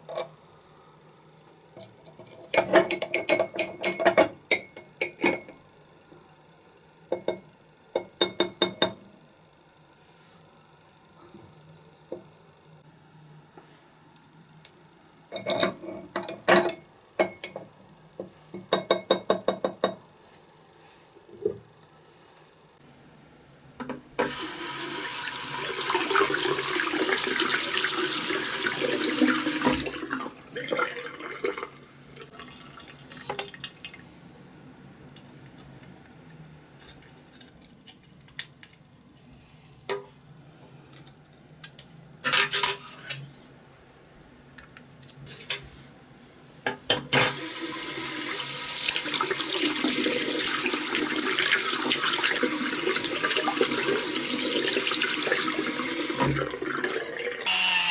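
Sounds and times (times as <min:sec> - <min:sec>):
water running from a tap: 0:24.2 - 0:33.9, 0:47.3 - 0:57.9.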